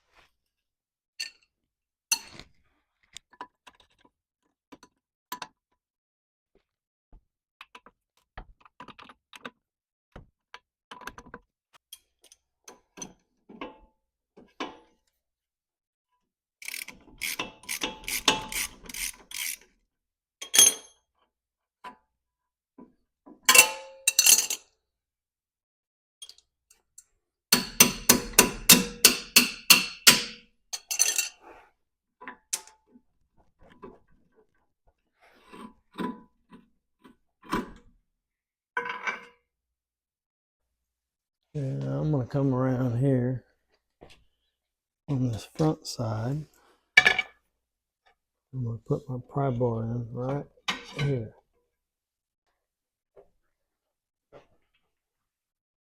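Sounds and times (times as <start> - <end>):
socket ratchet clicking: 16.6 - 19.6.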